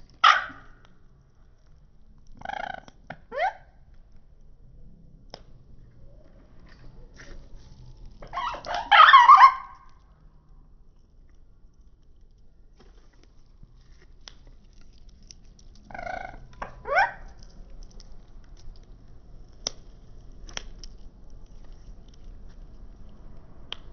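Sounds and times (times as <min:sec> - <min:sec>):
lovebirds chattering: 0:15.8 - 0:17.4.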